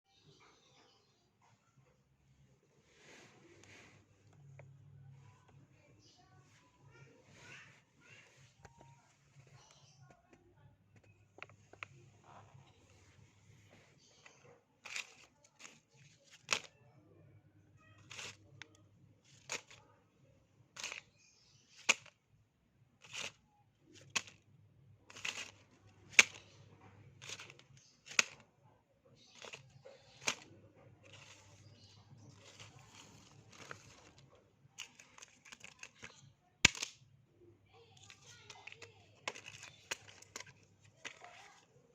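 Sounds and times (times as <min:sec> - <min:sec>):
objects dropping on a surface: 0:14.8 - 0:16.8, 0:18.0 - 0:18.4, 0:19.3 - 0:19.8, 0:20.8 - 0:21.1, 0:23.0 - 0:23.4, 0:24.0 - 0:24.4, 0:25.1 - 0:26.5, 0:27.2 - 0:28.4, 0:29.3 - 0:34.2, 0:34.8 - 0:37.0, 0:38.0 - 0:41.6.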